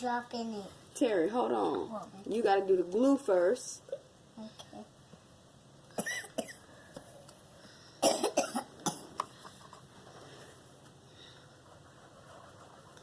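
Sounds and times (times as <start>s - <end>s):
person coughing: 5.9s - 6.7s, 8.0s - 9.2s.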